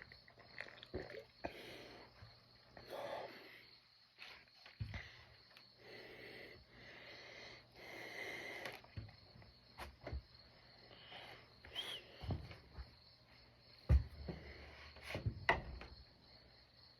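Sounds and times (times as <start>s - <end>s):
hard breathing through nose: 2.8s - 9.0s, 10.8s - 12.5s.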